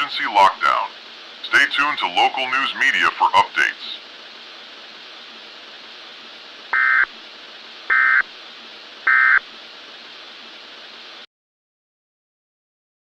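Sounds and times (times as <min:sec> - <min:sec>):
steady hiss: 0:00.0 - 0:11.3
digital two-tone data chirps: 0:06.8 - 0:07.1, 0:07.9 - 0:08.2, 0:09.1 - 0:09.4.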